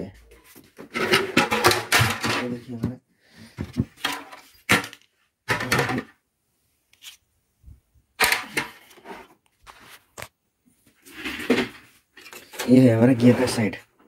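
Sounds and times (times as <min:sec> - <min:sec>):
plastic parts clicking and knocking: 0:00.7 - 0:03.0, 0:03.6 - 0:06.2, 0:08.2 - 0:09.0
plastic scrape: 0:08.2 - 0:10.1, 0:11.0 - 0:13.8.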